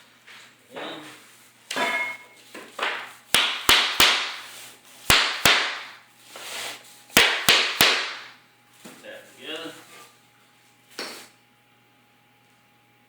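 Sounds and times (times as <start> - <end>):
hammer knocking on tapping block: 7.2 - 8.3.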